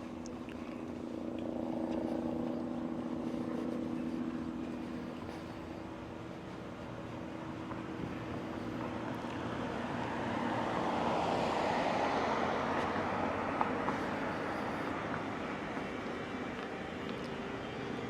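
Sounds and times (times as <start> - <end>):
vehicle passing by: 7.2 - 18.0.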